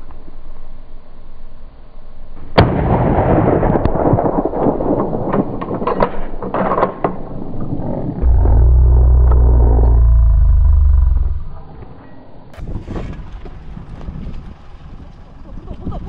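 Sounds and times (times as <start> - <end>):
gunshot: 2.6 - 4.8
loud low rumble: 8.2 - 11.8.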